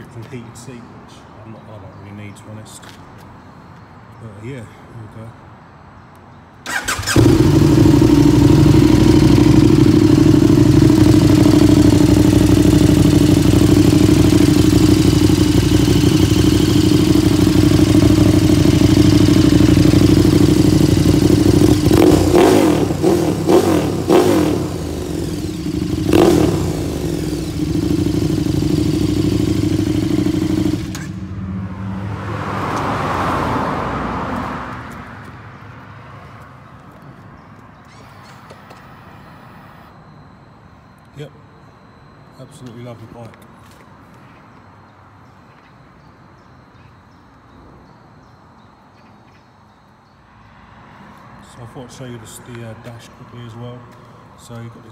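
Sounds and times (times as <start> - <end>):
motorcycle engine idling: 6.7 - 31.3.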